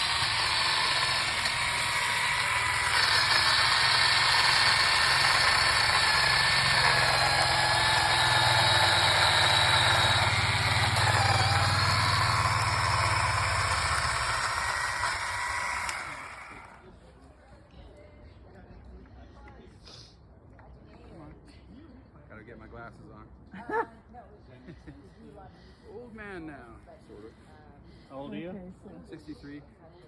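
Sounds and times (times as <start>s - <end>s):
engine running: 0.0s - 16.9s.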